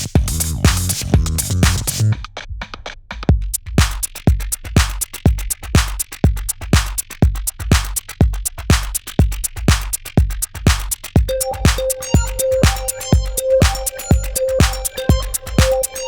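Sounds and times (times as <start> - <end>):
electronic dance music: 0.0 - 2.2, 9.7 - 16.0.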